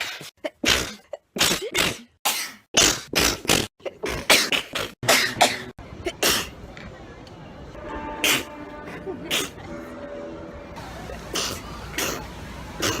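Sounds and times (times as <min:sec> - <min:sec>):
person sneezing: 0:09.2 - 0:09.6.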